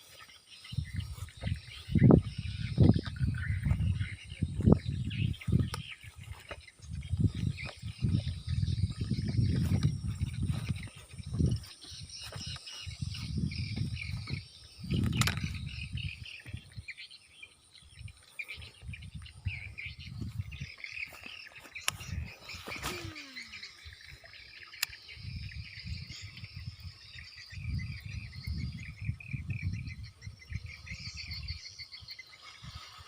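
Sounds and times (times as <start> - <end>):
birds chirping: 0.0 - 33.0
insects chirping: 0.0 - 33.0.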